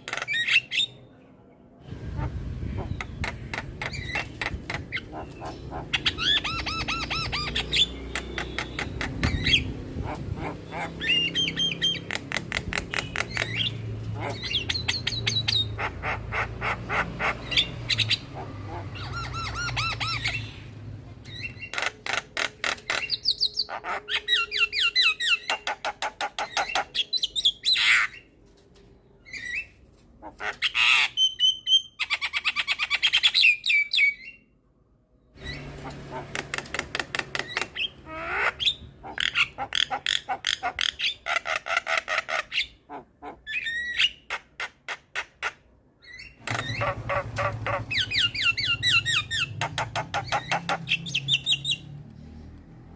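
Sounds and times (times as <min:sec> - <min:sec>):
bird singing varied song: 0:02.6 - 0:16.6, 0:17.2 - 0:28.3, 0:46.0 - 0:52.0.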